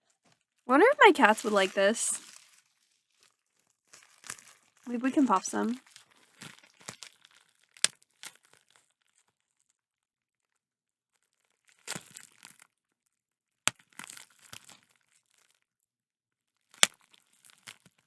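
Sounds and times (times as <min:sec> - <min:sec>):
bubble wrap crinkling: 0:01.0 - 0:02.9, 0:03.9 - 0:07.5.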